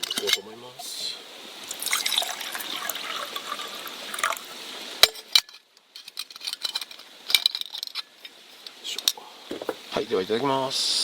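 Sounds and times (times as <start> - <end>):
water poured into a cup: 0.0 - 4.6.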